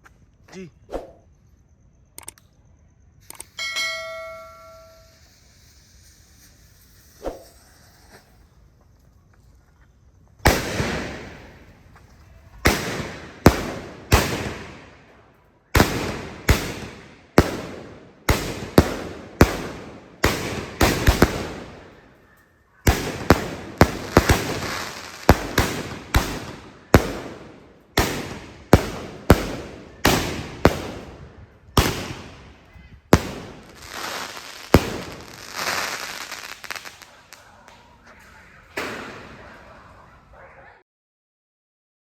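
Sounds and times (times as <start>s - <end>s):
fireworks crackle: 4.2s - 40.2s
fireworks bangs with hiss: 4.6s - 9.4s, 10.3s - 22.1s, 22.9s - 38.0s, 38.7s - 39.7s.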